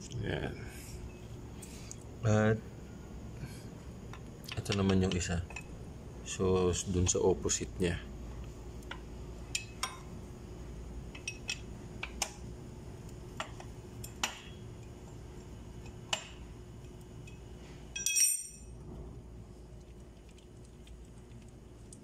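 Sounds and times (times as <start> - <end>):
socket wrench clinking: 18.0 - 18.6
metal clatter with ringing: 18.0 - 18.7.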